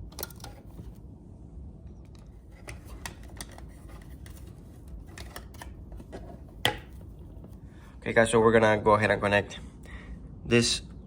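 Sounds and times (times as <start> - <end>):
lock parts clicking and tapping: 0.0 - 0.9.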